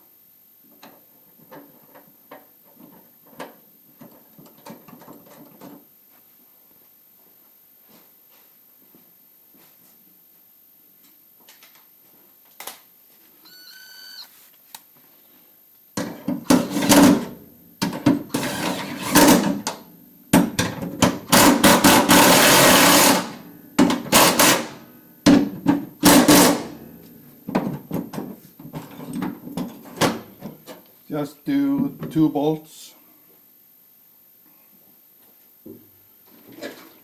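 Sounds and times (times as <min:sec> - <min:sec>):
brief squeak: 0:13.4 - 0:14.3.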